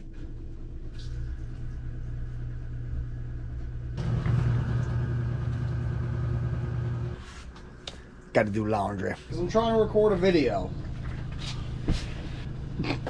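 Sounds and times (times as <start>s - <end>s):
motor humming: 1.0s - 7.2s.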